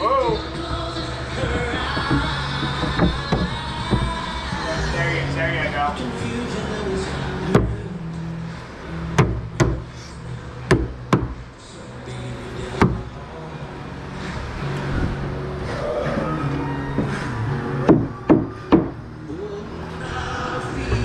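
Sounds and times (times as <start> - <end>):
low background music: 0.0 - 21.0
knocks on wooden boards: 1.4 - 4.2, 9.2 - 9.9, 10.7 - 11.4, 17.8 - 19.0.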